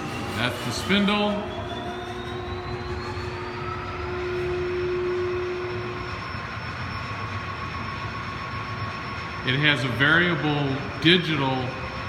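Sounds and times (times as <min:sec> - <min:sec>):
grinder spindle humming: 0:00.0 - 0:08.1
high whine: 0:00.0 - 0:12.0
lower steady tone: 0:01.3 - 0:12.0.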